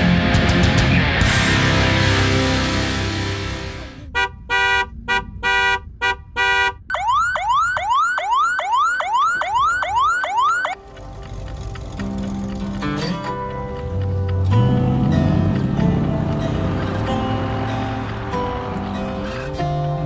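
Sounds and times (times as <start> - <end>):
car horn honking: 4.0 - 7.0
electronic car siren wailing: 6.8 - 12.3.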